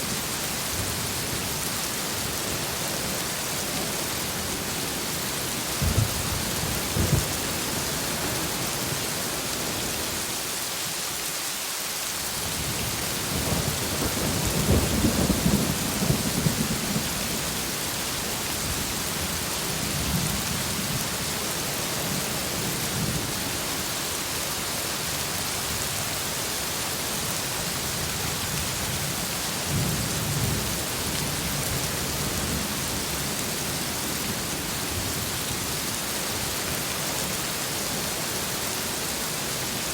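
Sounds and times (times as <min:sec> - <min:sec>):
heavy rain: 0:00.0 - 0:39.9
thunder: 0:05.8 - 0:07.6, 0:12.8 - 0:17.5.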